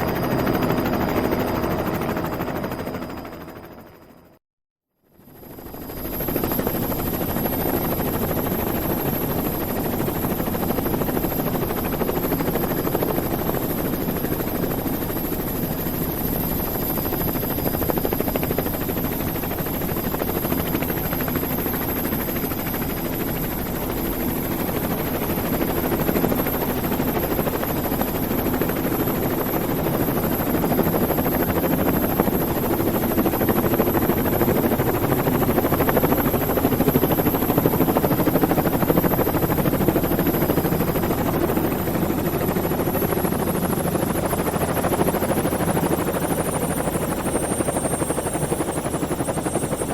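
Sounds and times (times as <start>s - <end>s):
helicopter rotor chop: 5.6s - 49.9s.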